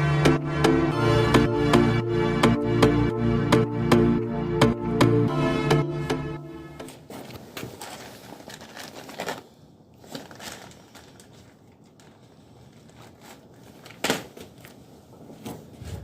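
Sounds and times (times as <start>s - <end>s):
plastic rustling: 6.8s - 16.0s.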